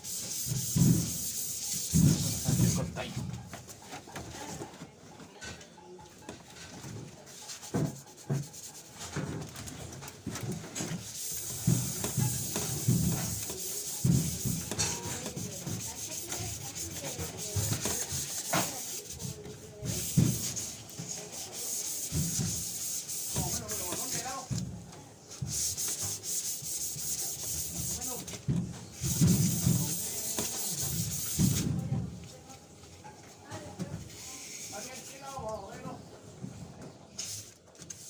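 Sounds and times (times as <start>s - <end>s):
sandpaper scraping sheet metal: 0.0s - 3.3s, 7.3s - 24.6s, 25.3s - 31.8s, 34.1s - 35.4s, 37.2s - 38.0s.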